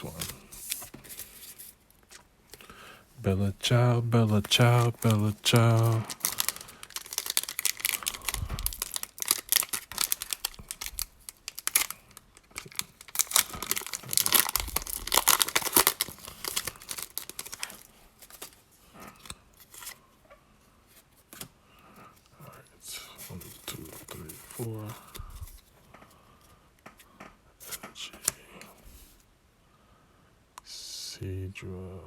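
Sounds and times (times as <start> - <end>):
foil wrapper tearing and crinkling: 3.7 - 18.6.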